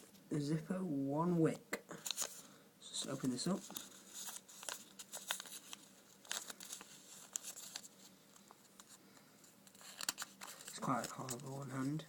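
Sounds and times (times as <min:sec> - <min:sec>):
packaging crinkling and tearing: 0:03.5 - 0:08.6, 0:09.7 - 0:11.6.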